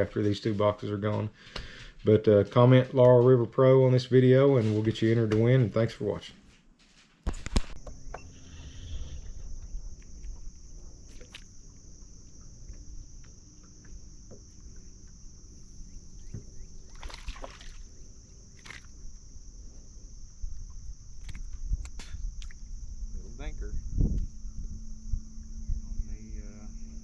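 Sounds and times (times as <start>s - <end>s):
low rumble: 7.4s - 16.9s, 17.9s - 27.0s
high-pitched insect drone: 7.7s - 27.0s.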